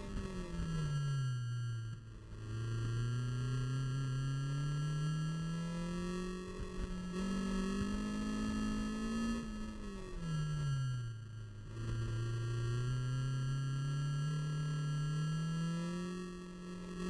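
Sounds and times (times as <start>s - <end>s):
motor droning: 0.0s - 17.0s.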